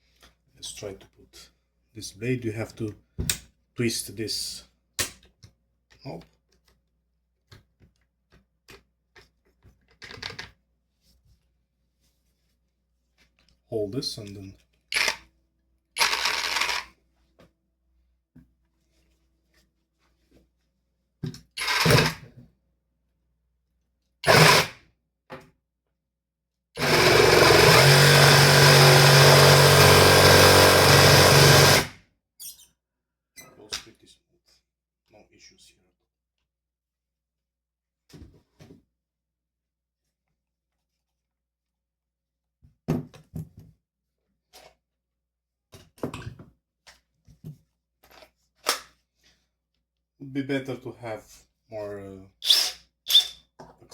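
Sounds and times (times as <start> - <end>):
reciprocating saw running: 24.3 - 24.8, 26.8 - 31.9.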